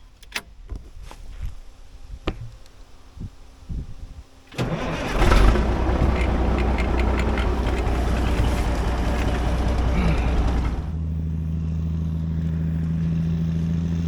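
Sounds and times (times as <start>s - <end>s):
diesel truck engine starting: 4.5s - 14.0s.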